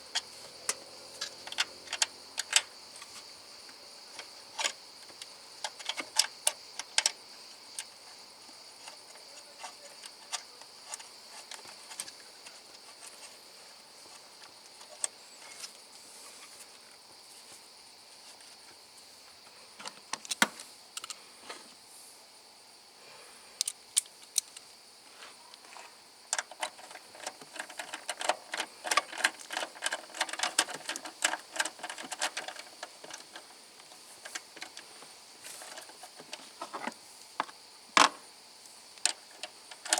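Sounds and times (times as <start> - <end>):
hand tools clicking and clinking: 0.1 - 2.7, 26.3 - 36.9.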